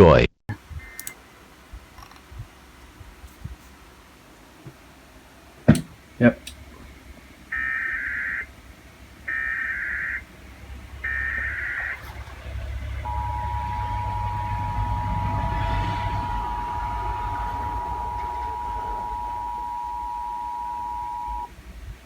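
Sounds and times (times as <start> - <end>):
low rumble: 6.6 - 22.0
two-tone attention signal: 7.5 - 8.5, 9.3 - 10.2, 11.0 - 12.1, 12.9 - 21.5
warbling digital data tones: 7.5 - 8.5, 9.3 - 10.3, 11.0 - 12.2, 12.9 - 21.5.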